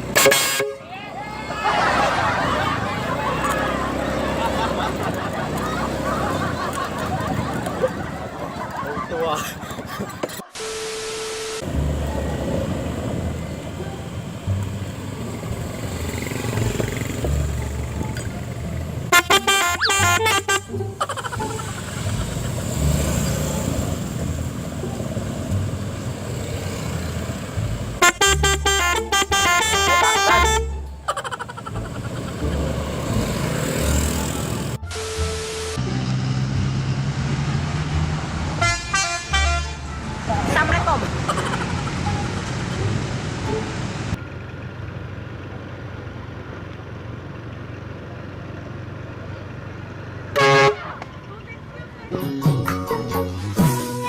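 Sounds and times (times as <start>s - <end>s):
multi-tone truck horn: 0.0s - 0.9s, 10.5s - 12.6s, 19.0s - 24.4s, 27.6s - 31.1s, 33.1s - 36.9s, 38.4s - 44.0s, 50.3s - 51.0s
traffic noise with engine rumble: 0.0s - 10.6s, 11.6s - 54.0s.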